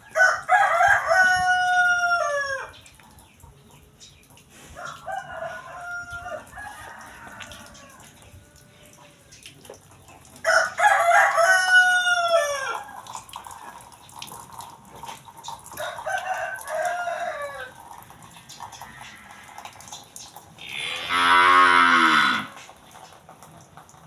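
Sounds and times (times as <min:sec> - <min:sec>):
rooster crowing: 0:00.2 - 0:02.7, 0:10.5 - 0:12.9, 0:15.8 - 0:17.8.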